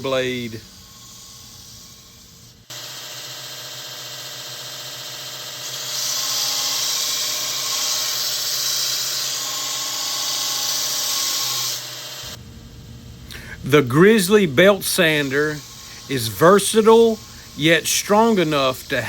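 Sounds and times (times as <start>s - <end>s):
belt sander running: 0.0s - 19.0s
metal blade grinding on belt: 5.6s - 12.0s, 14.0s - 19.0s.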